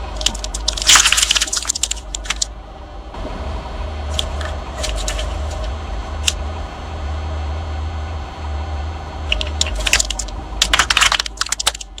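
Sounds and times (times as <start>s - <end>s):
objects crunching under tyre: 0.0s - 2.5s, 4.1s - 6.4s, 9.3s - 12.0s
car engine rumbling low: 0.0s - 12.0s.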